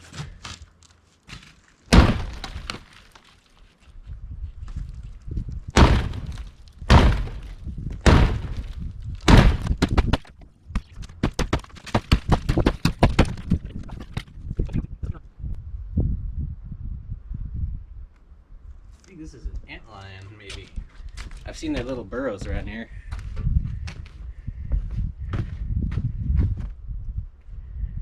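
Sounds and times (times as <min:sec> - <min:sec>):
wall panelling knocked and cracking: 0:01.3 - 0:03.3, 0:05.7 - 0:14.3.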